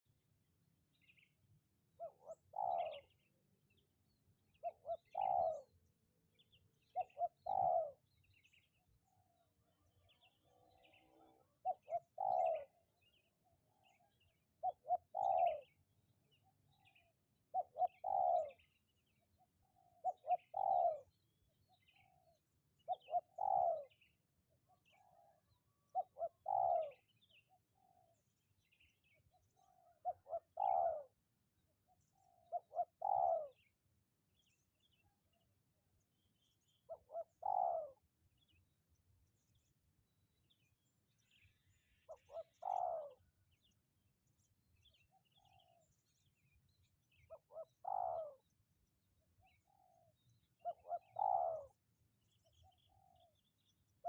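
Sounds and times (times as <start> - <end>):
faint small bird chirps: 0.9 - 54.0
dove cooing: 2.0 - 3.2, 4.5 - 5.8, 6.9 - 8.1, 9.2 - 15.8, 16.8 - 18.8, 19.6 - 21.2, 21.8 - 24.1, 24.7 - 28.2, 29.6 - 31.2, 32.2 - 33.7, 36.9 - 38.1, 42.1 - 43.3, 47.2 - 48.5, 49.5 - 51.8.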